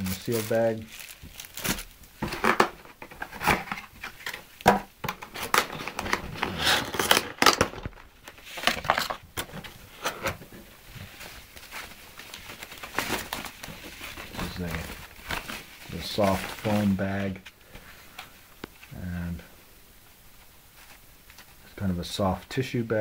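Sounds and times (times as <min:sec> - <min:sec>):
packaging rustling and clicking: 0:00.1 - 0:16.9.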